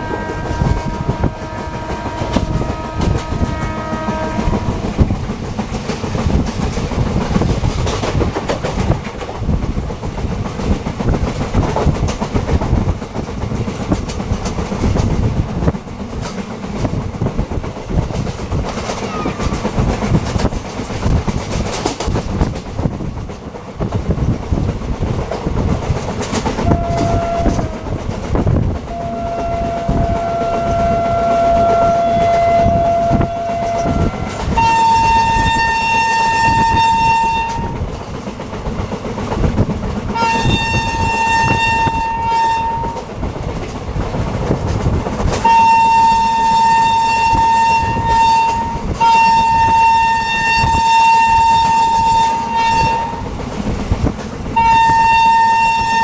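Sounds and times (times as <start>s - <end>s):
locomotive horn blasts: 0.0s - 5.0s, 26.6s - 27.8s, 28.9s - 37.8s, 40.1s - 43.0s, 45.4s - 53.3s, 54.6s - 56.0s
train wheels clacking on rails: 0.0s - 56.0s.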